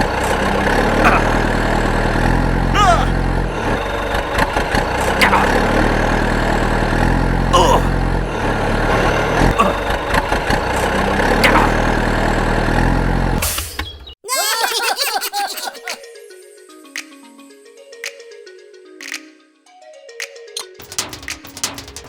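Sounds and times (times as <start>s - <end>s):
engine idling: 0.0s - 13.4s.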